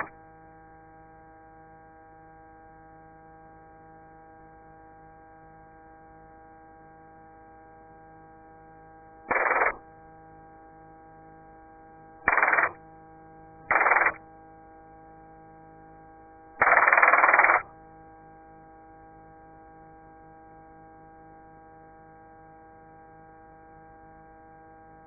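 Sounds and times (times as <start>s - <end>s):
held tones: 9.3s - 9.8s, 12.3s - 12.8s, 13.7s - 14.2s, 16.6s - 17.6s
radio static bursts: 9.3s - 9.8s, 12.3s - 12.8s, 13.7s - 14.2s, 16.6s - 17.7s.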